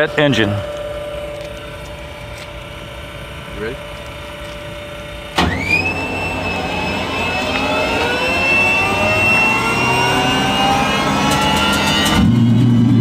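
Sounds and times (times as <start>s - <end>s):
jet engine spooling up: 5.3s - 12.9s.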